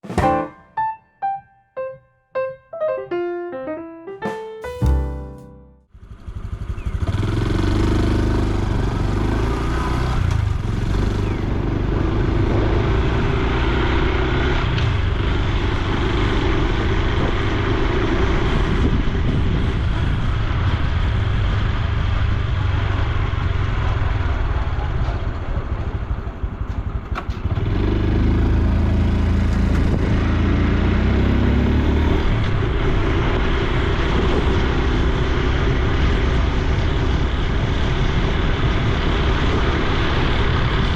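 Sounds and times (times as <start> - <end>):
motorcycle engine running: 5.9 - 31.4.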